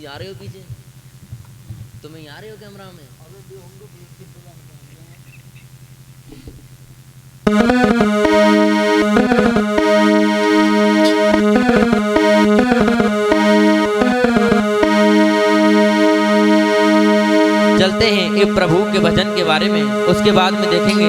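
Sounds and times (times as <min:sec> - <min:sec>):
electronic keyboard melody: 0:07.5 - 0:21.0
steady drone: 0:07.5 - 0:21.0.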